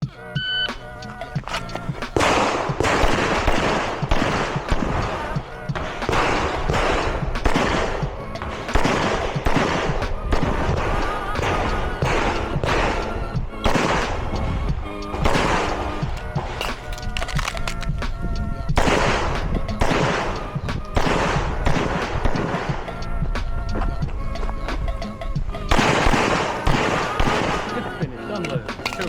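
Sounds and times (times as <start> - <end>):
background music: 0.0 - 29.0
airsoft pistol shots: 2.2 - 13.1, 13.7 - 14.3, 15.2 - 16.7, 18.8 - 20.4, 21.0 - 22.8, 25.7 - 27.8.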